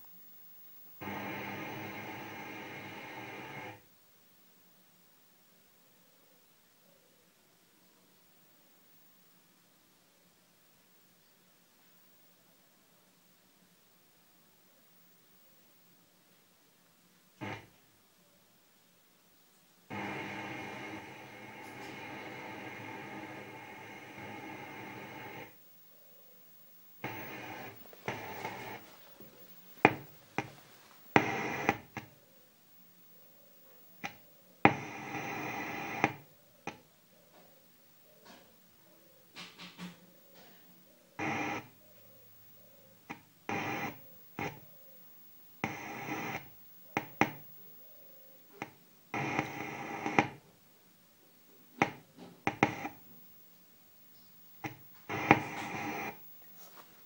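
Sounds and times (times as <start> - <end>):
subwoofer buzzing: 1.0 - 3.8, 17.4 - 17.8, 19.9 - 25.6, 27.0 - 28.9, 29.8 - 32.1, 43.5 - 44.6, 49.2 - 50.4, 54.6 - 56.2
subwoofer popping: 17.4 - 17.7, 54.6 - 56.2.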